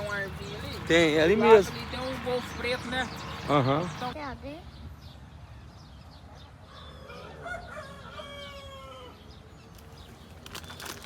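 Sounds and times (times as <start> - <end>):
rooster crowing: 6.7 - 9.3.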